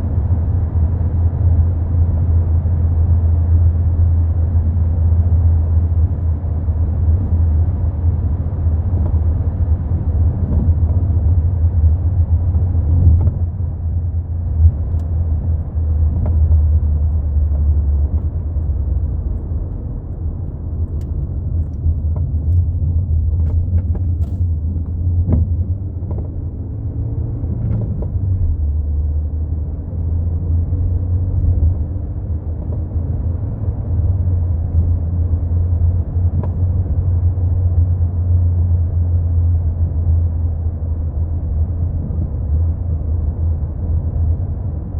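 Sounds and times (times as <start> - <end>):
car road rumble: 0.0 - 44.9.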